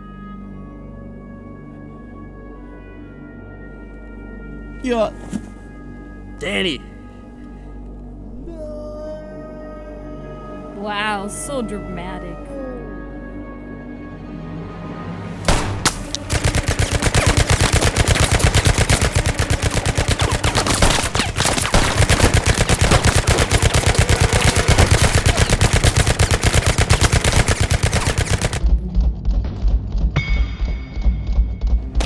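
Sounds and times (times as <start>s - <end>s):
rapid automatic gunfire: 15.6s - 28.7s.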